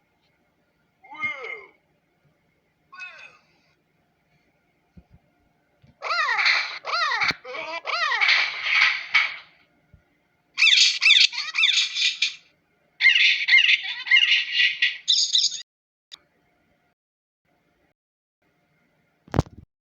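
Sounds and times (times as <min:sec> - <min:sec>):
birds squawking and chattering: 0:06.0 - 0:09.5, 0:10.6 - 0:15.6.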